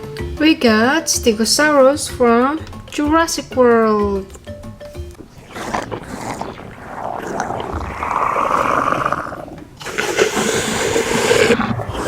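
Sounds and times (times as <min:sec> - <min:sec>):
harsh high dinosaur roar: 0:05.2 - 0:12.0
low rough dinosaur roar: 0:05.2 - 0:12.0.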